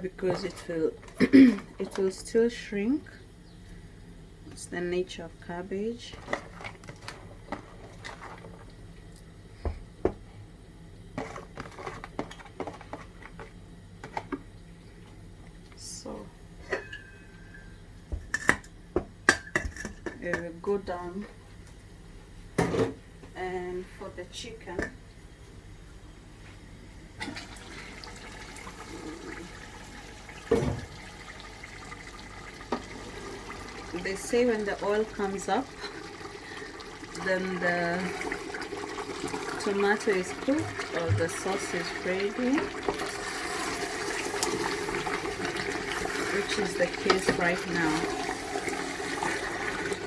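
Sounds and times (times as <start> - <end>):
sauce bubbling in a pot: 27.3 - 50.0.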